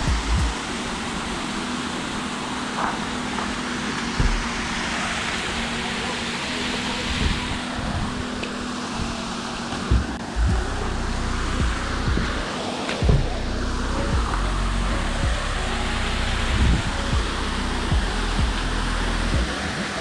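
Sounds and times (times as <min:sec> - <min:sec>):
dull low thumps: 0:00.0 - 0:00.6, 0:04.2 - 0:04.8, 0:09.0 - 0:19.6
waterfall rushing: 0:00.0 - 0:20.0.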